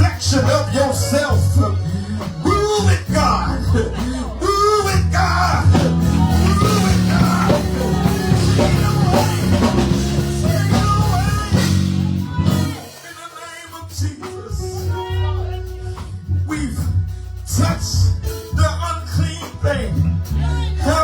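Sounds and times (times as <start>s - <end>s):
church band music: 0.0s - 21.0s
person singing or calling out: 2.5s - 13.2s, 14.3s - 16.1s.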